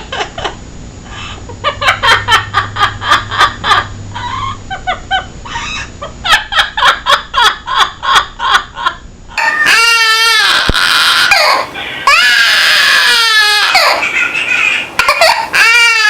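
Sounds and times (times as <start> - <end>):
parrot mimicking laughter: 0.0 - 16.0
parrot chattering: 9.4 - 16.0.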